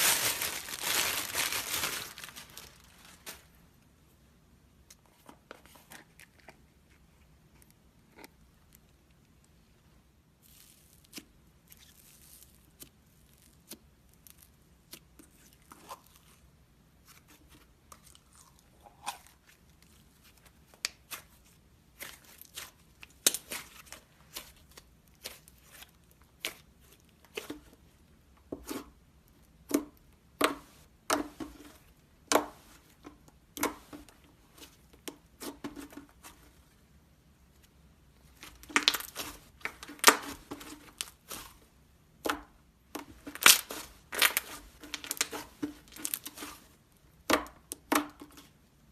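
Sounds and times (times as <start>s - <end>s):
slime popping and crackling: 0.0s - 3.2s, 38.4s - 41.5s, 43.2s - 46.5s.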